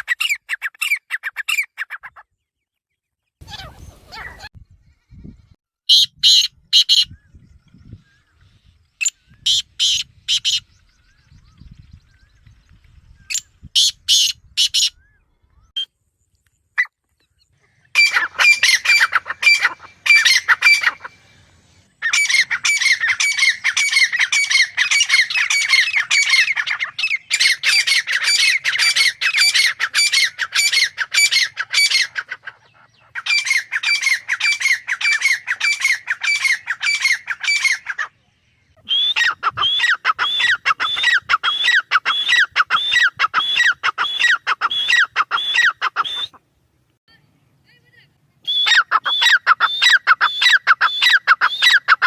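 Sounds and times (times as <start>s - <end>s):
francolin calling: 16.8s - 46.4s, 48.4s - 52.0s.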